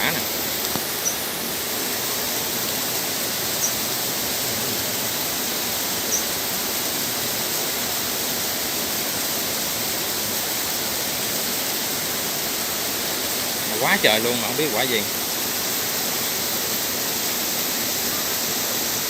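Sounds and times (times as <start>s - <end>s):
rushing water: 0.0s - 19.0s
faint high chirps: 1.0s - 1.2s, 3.4s - 4.9s, 6.0s - 6.3s.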